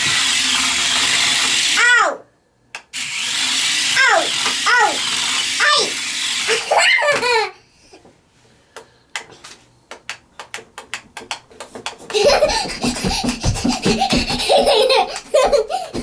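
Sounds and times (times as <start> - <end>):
child giggling and laughing: 6.5 - 7.6, 12.0 - 16.0.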